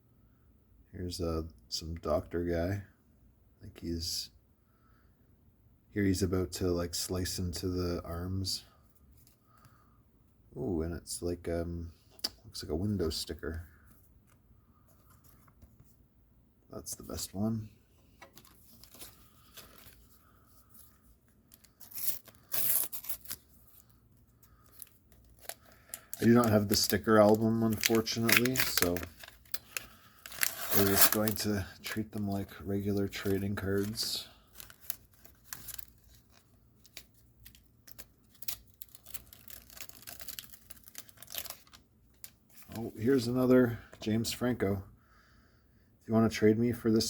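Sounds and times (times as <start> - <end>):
paper stickers rustling: 24.5 - 41.8
paper tearing and rasping: 30.3 - 31.4.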